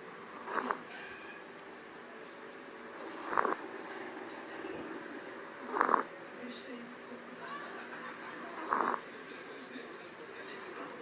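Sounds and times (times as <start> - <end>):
dog snoring: 0.0 - 0.9, 2.9 - 4.0, 5.4 - 6.1, 8.3 - 9.0, 10.6 - 11.0.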